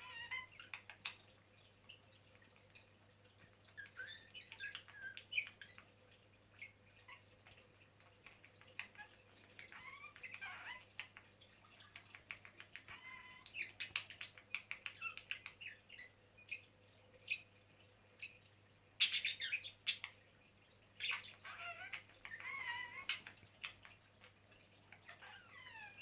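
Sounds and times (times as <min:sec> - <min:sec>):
budgerigars chirping: 0:19.0 - 0:20.2, 0:21.0 - 0:24.0.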